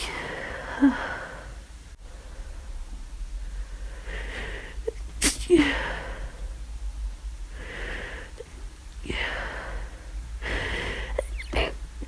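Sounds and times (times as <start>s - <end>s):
breathy in-breath: 3.4s - 5.0s, 7.5s - 8.5s, 9.1s - 11.4s
person sneezing: 4.9s - 5.9s.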